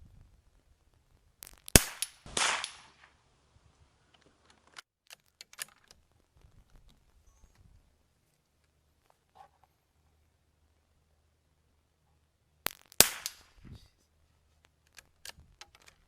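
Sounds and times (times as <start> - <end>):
rifle shot: 1.7 - 3.2, 12.7 - 13.6.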